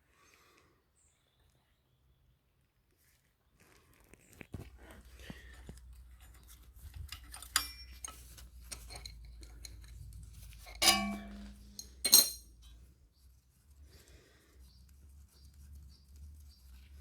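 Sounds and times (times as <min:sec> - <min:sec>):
metal tools clinking: 0:07.4 - 0:09.9, 0:10.5 - 0:12.8
loud metal clanks: 0:10.7 - 0:12.4.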